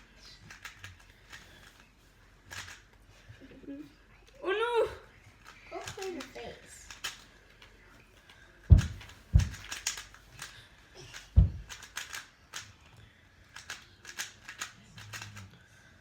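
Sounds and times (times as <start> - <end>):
puzzle cube clicking: 0.5 - 1.4, 2.5 - 2.8, 5.4 - 7.3, 8.7 - 12.7, 13.5 - 15.4
heavier thumps: 8.7 - 9.8, 11.3 - 11.8.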